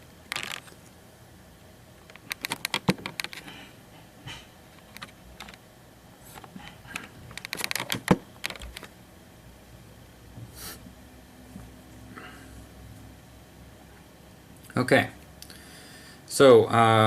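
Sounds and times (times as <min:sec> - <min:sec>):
small hard objects clicking: 0:00.3 - 0:00.8, 0:02.0 - 0:03.4, 0:07.3 - 0:08.9.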